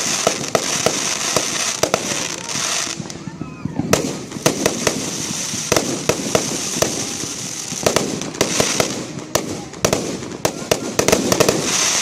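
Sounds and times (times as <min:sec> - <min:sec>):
steady hiss: 0:00.0 - 0:03.2
fireworks banging: 0:00.0 - 0:12.0.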